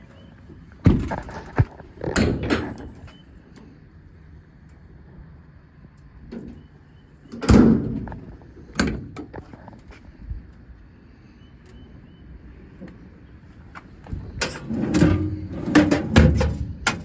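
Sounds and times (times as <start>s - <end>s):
metal compartment door clunks: 0.8s - 3.2s, 7.3s - 9.5s, 14.0s - 17.0s.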